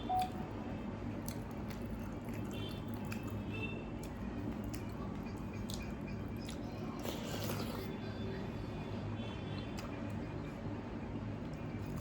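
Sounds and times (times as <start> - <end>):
person chewing: 1.2 - 8.0, 11.8 - 12.0.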